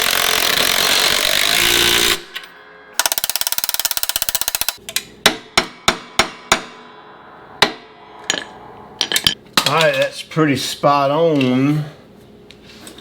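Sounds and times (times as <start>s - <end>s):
power tool rattling: 3.0s - 4.8s
sharp ringing metal knocks: 3.0s - 7.0s.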